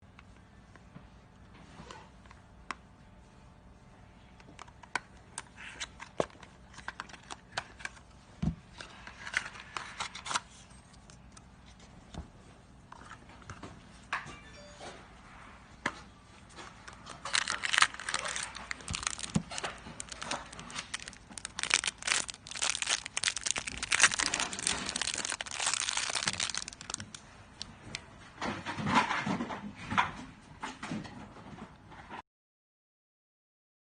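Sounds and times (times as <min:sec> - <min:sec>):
material crinkling and tearing: 0:16.7 - 0:27.9.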